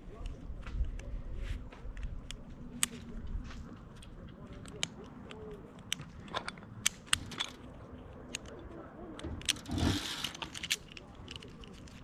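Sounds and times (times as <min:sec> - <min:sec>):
climbing gear clicks and scrapes: 0:04.0 - 0:08.6, 0:09.4 - 0:12.0.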